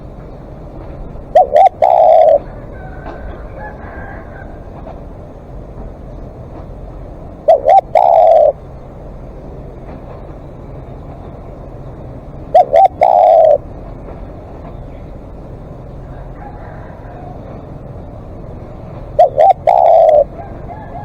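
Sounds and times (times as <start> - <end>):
dove cooing: 1.2 - 5.0, 7.3 - 8.7, 12.4 - 14.1, 18.7 - 21.0.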